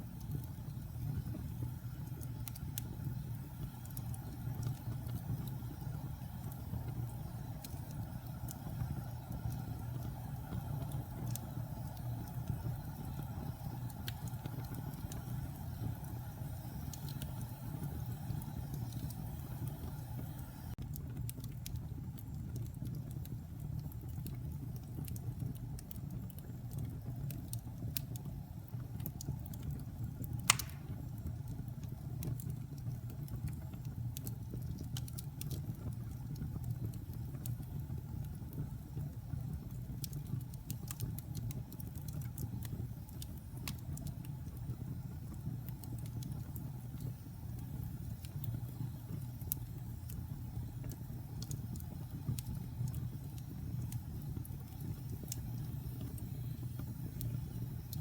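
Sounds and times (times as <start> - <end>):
low rumble of flame: 0.0 - 58.0
wood crackles: 0.0 - 58.0
loud pop of fire: 30.5 - 31.2.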